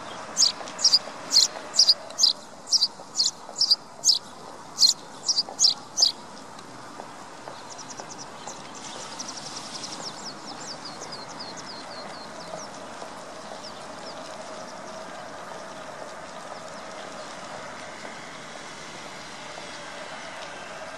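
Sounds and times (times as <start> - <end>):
sparrows chirping: 0.0 - 6.2, 7.4 - 14.9.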